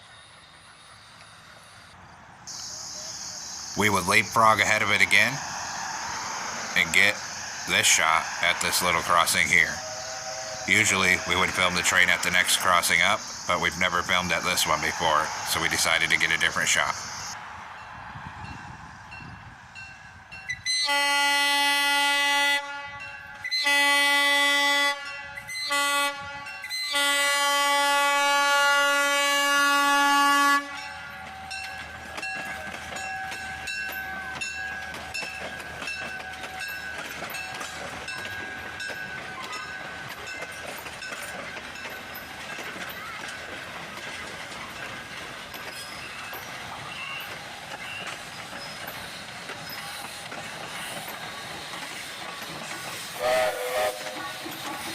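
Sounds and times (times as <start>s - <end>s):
train wheels clicking over rail joints: 2.5s - 17.4s, 30.7s - 54.9s
steam locomotive whistle blasts: 6.3s - 17.4s, 20.6s - 31.6s, 53.0s - 54.9s.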